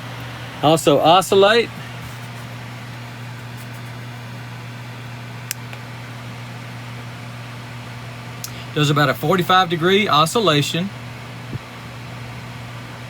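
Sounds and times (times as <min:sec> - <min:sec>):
fan air rushing: 0:00.0 - 0:13.0
fan motor hum: 0:00.0 - 0:13.0.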